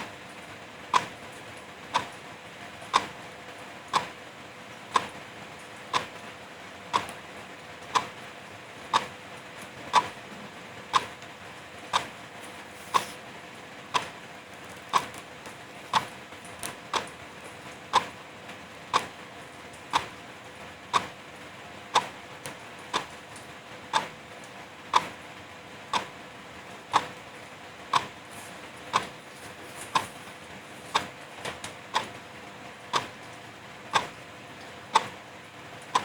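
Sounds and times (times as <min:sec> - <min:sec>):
wall clock ticking: 0:00.9 - 0:01.2, 0:01.8 - 0:02.2, 0:02.9 - 0:03.2, 0:03.9 - 0:04.2, 0:04.9 - 0:05.2, 0:05.8 - 0:06.2, 0:06.9 - 0:07.2, 0:07.9 - 0:08.2, 0:08.9 - 0:09.2, 0:09.9 - 0:10.2, 0:10.9 - 0:11.2, 0:11.9 - 0:12.2, 0:12.9 - 0:13.2, 0:13.9 - 0:17.3, 0:17.9 - 0:18.3, 0:18.9 - 0:19.2, 0:19.8 - 0:20.3, 0:20.9 - 0:21.2, 0:21.9 - 0:24.2, 0:24.9 - 0:25.2, 0:25.9 - 0:26.2, 0:26.9 - 0:36.0.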